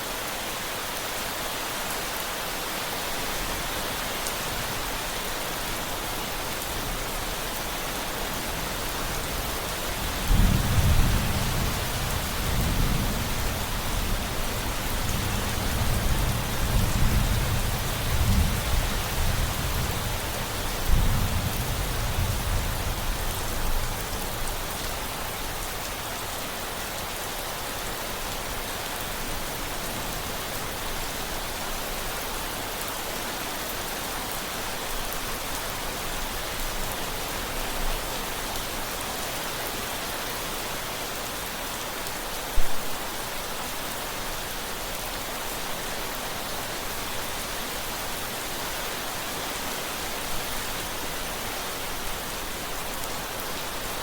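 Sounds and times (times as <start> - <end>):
steady rain: 0.0 - 54.0
low rumble of thunder: 10.0 - 24.1.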